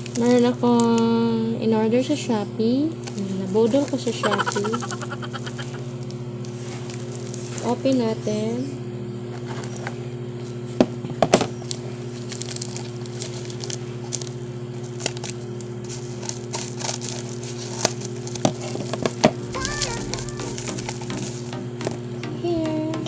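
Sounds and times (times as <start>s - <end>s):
packaging tearing and crinkling: 11.7s - 19.0s
steady low hum: 19.3s - 22.5s.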